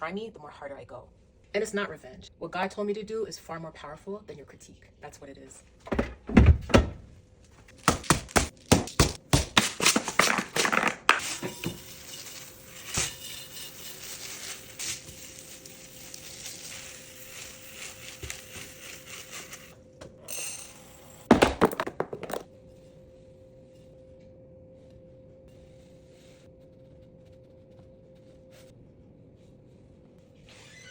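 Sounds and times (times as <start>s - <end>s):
knocks and clatter: 5.9s - 7.1s
faint steady hum: 22.5s - 30.5s.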